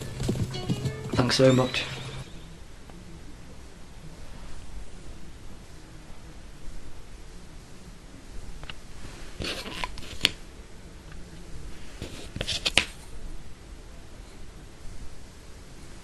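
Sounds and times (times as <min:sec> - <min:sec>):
rustling: 0:00.0 - 0:02.6, 0:08.4 - 0:10.5, 0:11.1 - 0:13.3.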